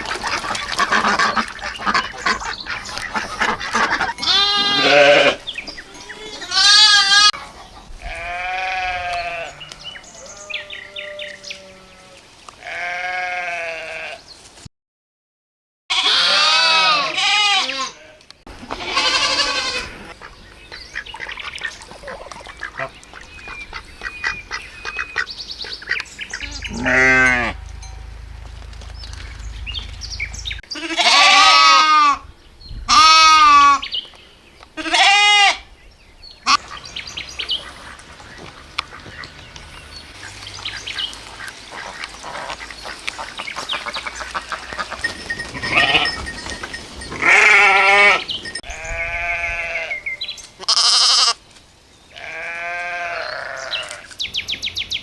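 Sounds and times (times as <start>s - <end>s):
farm animals bleating: 0.8s - 7.4s, 8.0s - 14.2s, 15.9s - 20.2s, 25.9s - 32.3s, 32.9s - 33.9s, 34.8s - 35.7s, 36.4s - 36.7s, 43.8s - 51.4s, 52.1s - 54.2s.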